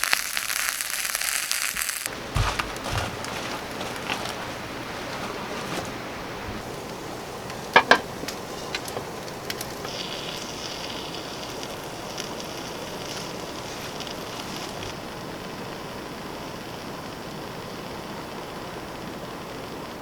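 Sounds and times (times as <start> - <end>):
scattered crackles: 0.0 - 15.1
steady hissing: 0.0 - 20.0
higher hiss: 3.6 - 18.8.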